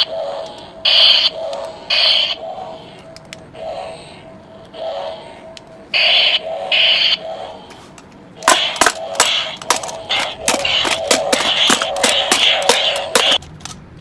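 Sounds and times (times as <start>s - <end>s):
toy lightsaber hum: 0.0s - 13.8s
toy lightsaber clash sounds: 7.9s - 13.8s.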